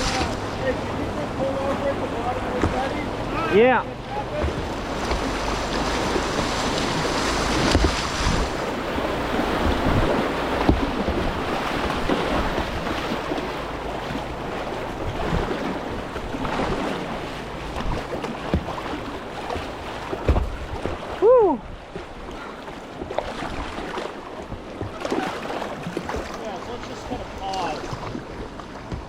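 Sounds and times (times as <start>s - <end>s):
rushing river whitewater: 0.0s - 29.0s
low thumps: 4.2s - 12.8s
wind buffeting microphone: 4.3s - 13.3s.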